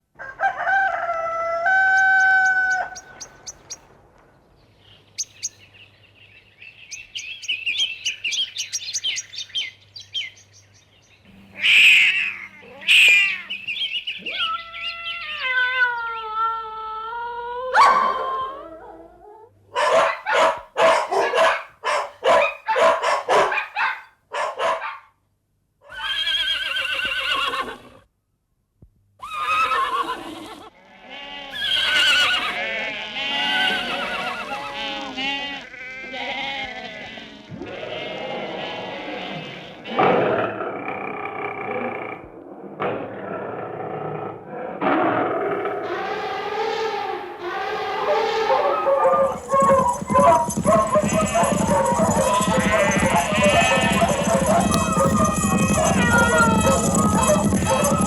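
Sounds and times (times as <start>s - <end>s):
rooster crowing: 0.2s - 3.2s, 47.9s - 58.0s
birds chirping: 2.0s - 15.7s, 19.8s - 24.9s, 47.6s - 58.0s
animal call: 11.3s - 18.7s, 19.8s - 25.0s, 29.2s - 42.4s, 44.5s - 58.0s
dog barking: 17.7s - 18.4s, 19.7s - 25.2s, 48.0s - 55.2s.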